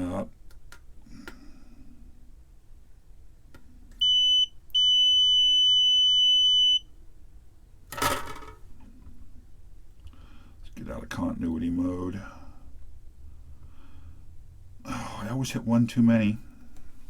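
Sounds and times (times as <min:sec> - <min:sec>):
multimeter beeper high tone: 0:04.0 - 0:06.9.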